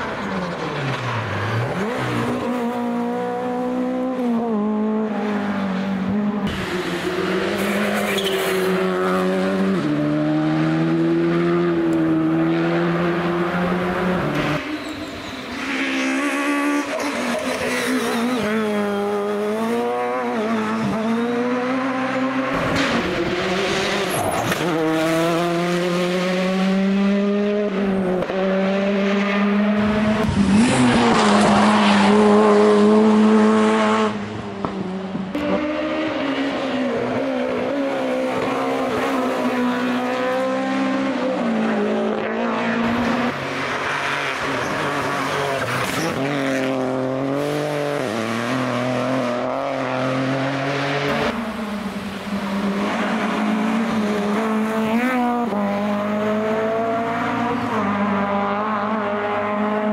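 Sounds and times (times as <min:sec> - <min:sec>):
rally car engines revving: 0:00.0 - 0:59.9
tyre squeal: 0:07.6 - 0:08.8, 0:14.6 - 0:16.2.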